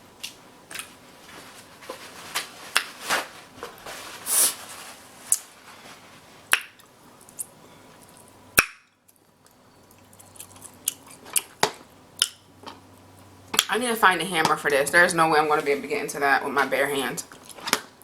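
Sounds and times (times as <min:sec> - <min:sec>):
wet squishing and chewing: 0:09.0 - 0:13.7, 0:17.3 - 0:18.0.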